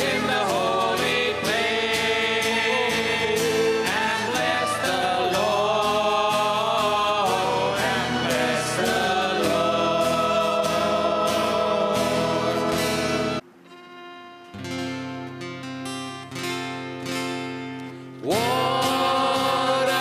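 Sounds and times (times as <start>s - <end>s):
group singing worship song: 0.0s - 13.4s, 18.2s - 20.0s
acoustic guitar strumming softly: 0.0s - 20.0s
guitar and keyboard: 0.0s - 20.0s.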